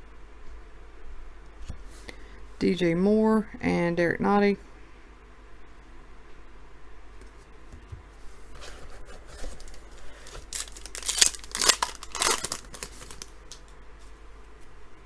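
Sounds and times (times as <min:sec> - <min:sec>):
foil wrapper crinkling and tearing: 0:09.4 - 0:13.7.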